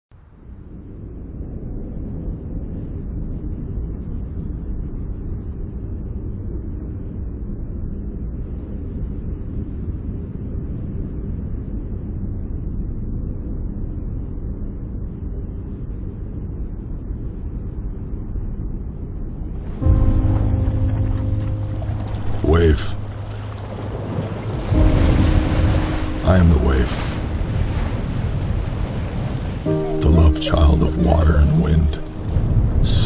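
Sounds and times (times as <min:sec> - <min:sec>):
ocean surf rumbling: 0:19.6 - 0:33.0.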